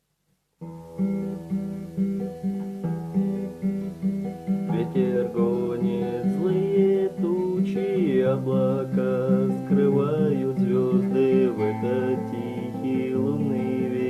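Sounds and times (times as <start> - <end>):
acoustic guitar strumming: 0.6 - 14.0.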